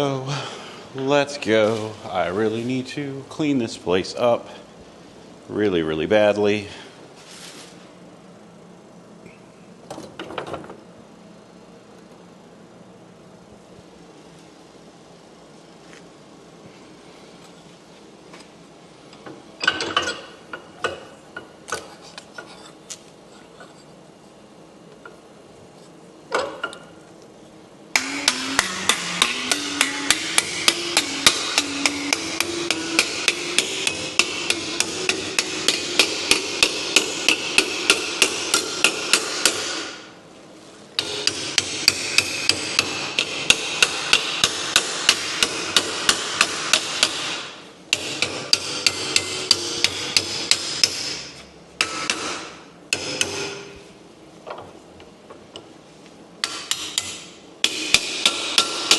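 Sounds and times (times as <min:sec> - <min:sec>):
rapid metal strikes on sheet metal: 0:28.0 - 0:40.0, 0:41.0 - 0:51.2, 0:51.8 - 0:53.7, 0:56.4 - 0:58.9.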